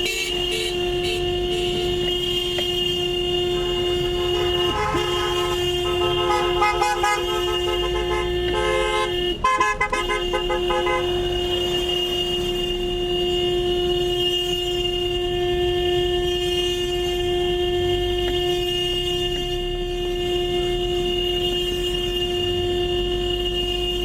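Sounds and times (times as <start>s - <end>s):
horns tooting: 0.0s - 24.0s
steady vehicle horn: 0.0s - 24.0s.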